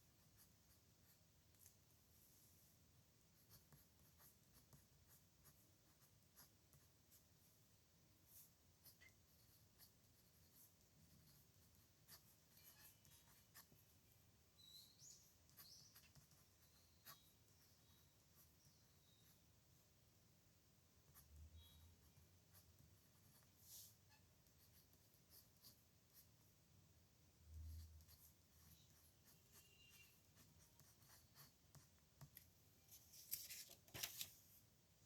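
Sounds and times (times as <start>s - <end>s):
pen scratching on paper: 3.4s - 7.2s, 8.3s - 13.9s, 15.2s - 19.4s, 22.0s - 26.3s, 27.7s - 32.4s.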